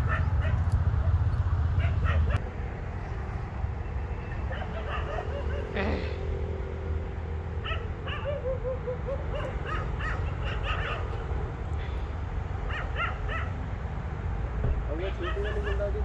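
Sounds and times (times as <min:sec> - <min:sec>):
birds calling harshly: 0:03.9 - 0:06.3, 0:07.6 - 0:13.6, 0:15.1 - 0:15.9.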